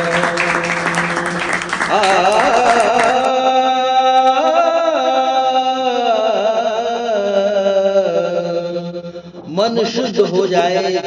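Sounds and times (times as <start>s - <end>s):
people clapping: 0.0s - 3.4s.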